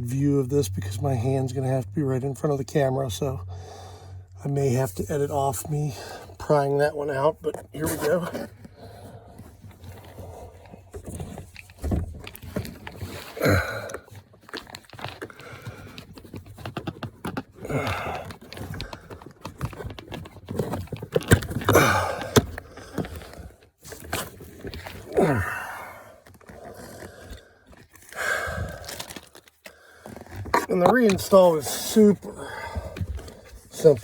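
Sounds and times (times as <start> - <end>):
man grunting with effort: 13.4 - 14.0, 21.7 - 22.4, 25.1 - 26.1.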